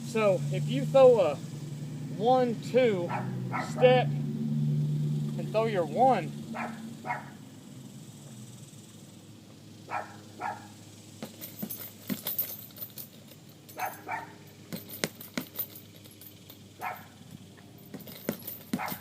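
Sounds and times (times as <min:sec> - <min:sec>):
dog barking: 0:03.1 - 0:03.9, 0:06.5 - 0:07.4, 0:09.9 - 0:10.7, 0:13.8 - 0:14.4, 0:16.8 - 0:17.1, 0:18.8 - 0:19.0
metallic clicking and jingling: 0:09.9 - 0:19.0.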